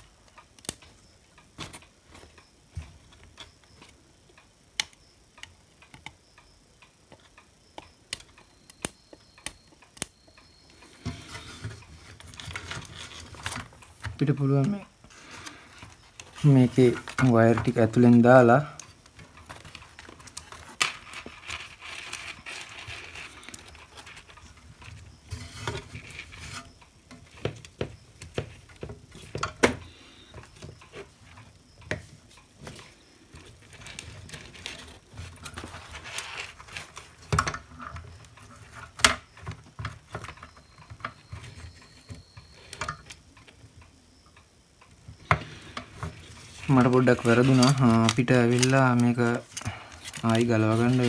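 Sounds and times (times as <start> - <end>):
plastic parts clicking: 45.3 - 51.0.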